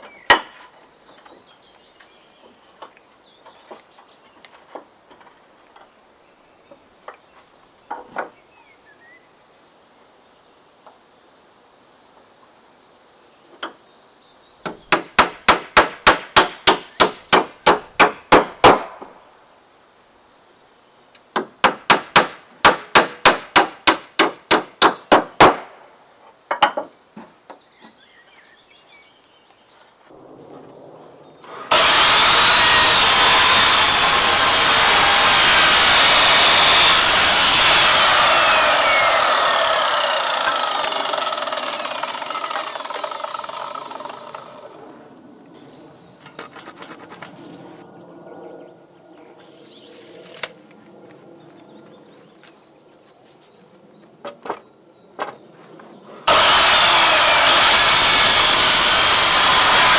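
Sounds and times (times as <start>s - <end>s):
hammer driving nails into wood: 14.7s - 19.1s, 21.4s - 25.7s
power saw cutting wood: 31.4s - 44.8s, 56.3s - 59.9s.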